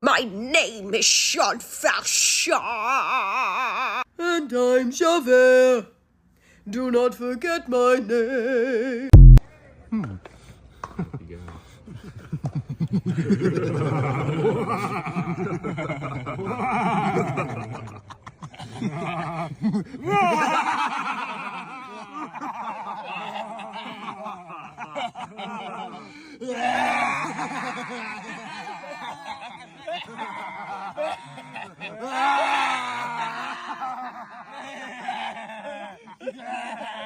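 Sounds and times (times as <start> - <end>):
people laughing and vocalizing: 2.5 - 4.1, 11.0 - 37.0.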